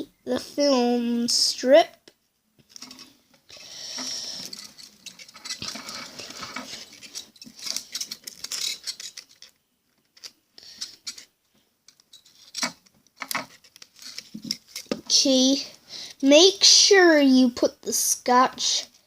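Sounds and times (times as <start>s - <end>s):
tape rustling scratchily: 2.6s - 15.2s.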